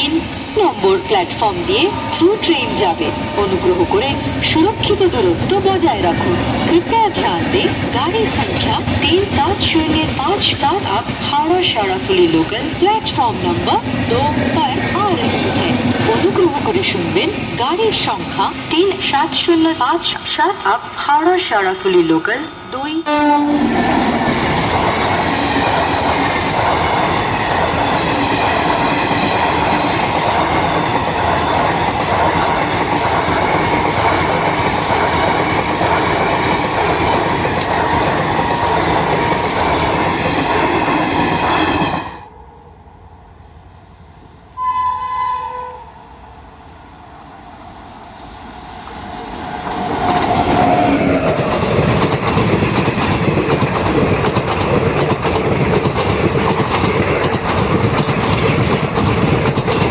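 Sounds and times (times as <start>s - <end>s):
train passing at speed: 0.0s - 59.9s
train horn blast: 0.8s - 5.3s, 23.0s - 24.7s, 44.6s - 46.1s.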